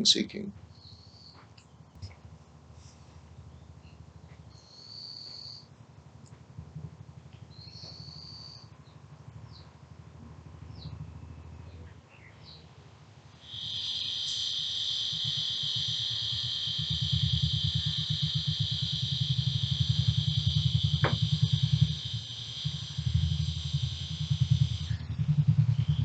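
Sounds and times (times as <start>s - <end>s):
motorcycle engine throbbing: 0.0s - 11.8s, 13.2s - 26.0s
high-pitched whine: 13.3s - 26.0s.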